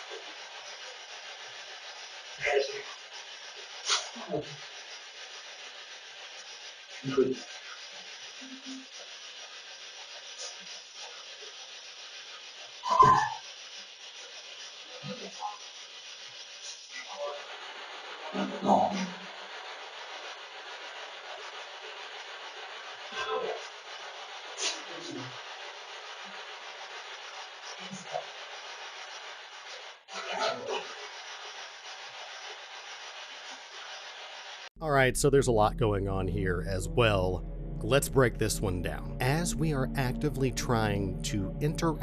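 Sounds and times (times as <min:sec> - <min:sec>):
radio static hiss: 0:34.8 - 0:42.0.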